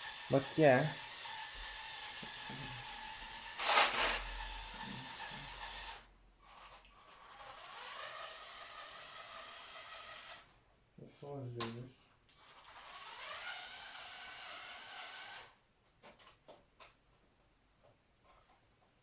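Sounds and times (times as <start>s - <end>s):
toy train motor whining: 0.0s - 10.5s, 12.3s - 15.6s.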